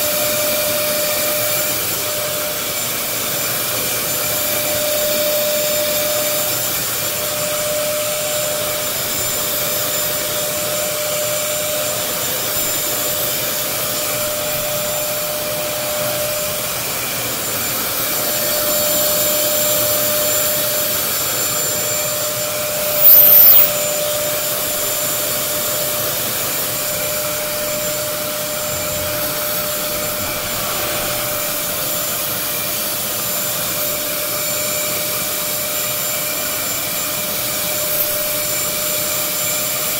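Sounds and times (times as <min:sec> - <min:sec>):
vacuum cleaner motor running: 0:00.0 - 0:39.9
high whistle: 0:18.4 - 0:25.9.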